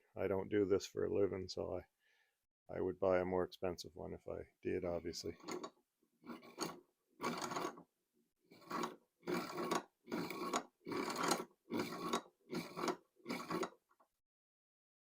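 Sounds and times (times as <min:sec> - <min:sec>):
hand-cranked filer rasping: 0:05.4 - 0:07.8, 0:08.5 - 0:13.8.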